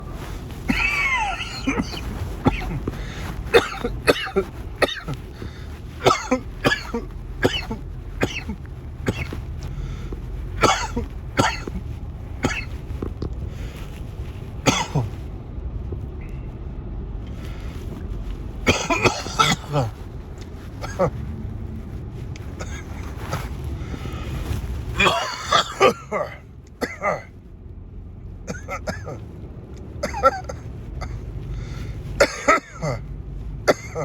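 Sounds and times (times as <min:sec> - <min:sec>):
man coughing harshly: 0:00.7 - 0:09.4, 0:10.6 - 0:11.8, 0:12.4 - 0:12.7, 0:14.6 - 0:15.1, 0:18.7 - 0:19.9, 0:20.8 - 0:21.1, 0:25.0 - 0:27.3, 0:28.5 - 0:29.2, 0:30.0 - 0:31.2, 0:32.2 - 0:33.0, 0:33.7 - 0:34.0.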